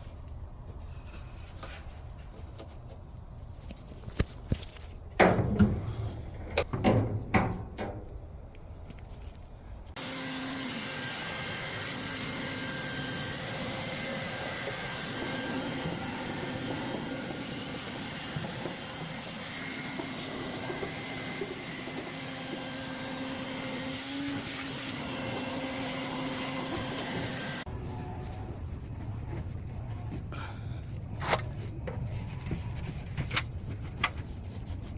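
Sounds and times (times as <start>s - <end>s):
vacuum cleaner running: 10.0s - 27.6s.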